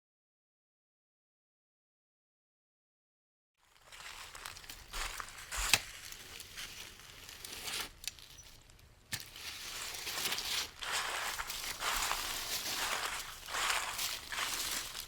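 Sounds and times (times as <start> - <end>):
clothing and gear rustling: 9.2 - 15.0.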